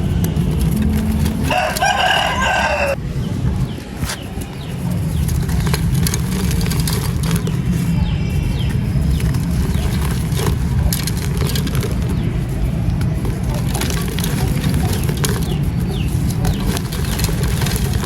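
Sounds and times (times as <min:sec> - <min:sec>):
sharp crackles: 0:00.0 - 0:03.0, 0:03.8 - 0:18.0
steady low rumble: 0:00.0 - 0:18.0
rooster crowing: 0:01.4 - 0:03.0.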